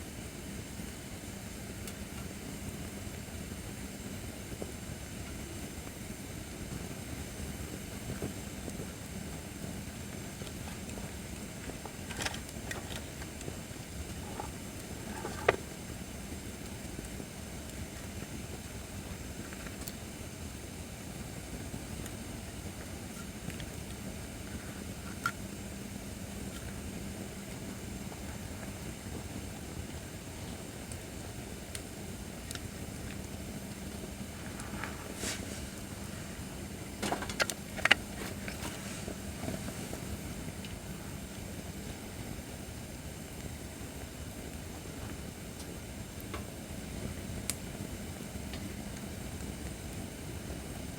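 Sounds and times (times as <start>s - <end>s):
wood crackling: 10.1s - 20.2s, 31.7s - 40.9s.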